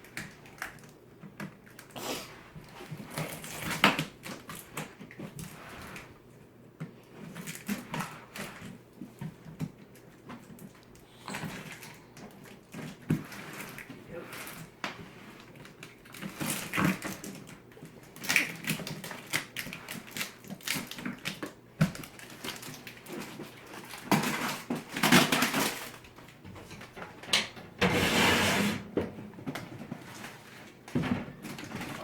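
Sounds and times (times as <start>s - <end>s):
box handling clacks and rustling: 11.4s - 27.2s.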